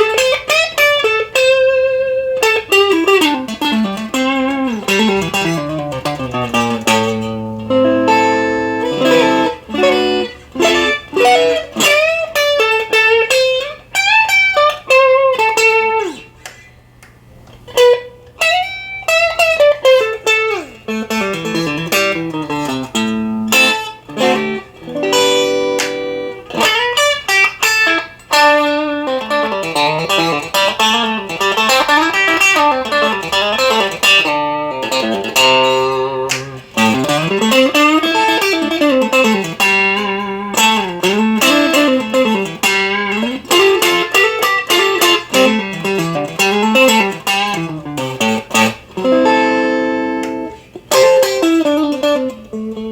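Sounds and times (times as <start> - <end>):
electric guitar through amplifier: 0.0 - 52.9.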